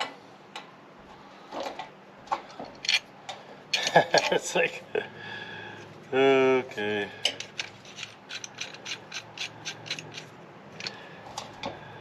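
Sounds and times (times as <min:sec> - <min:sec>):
ratchet wrench clicking: 0:07.4 - 0:11.0.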